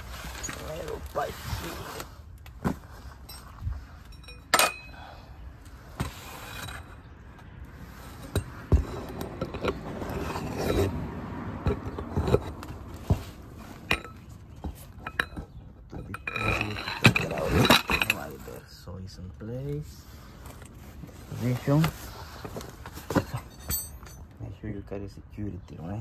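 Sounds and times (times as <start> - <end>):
metal hand tools clinking: 15.0 - 18.4, 23.3 - 24.3.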